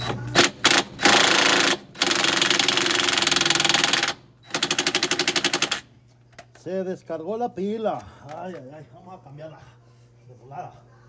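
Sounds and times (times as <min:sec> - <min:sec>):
impact wrench hammering on nut: 0:00.4 - 0:05.8.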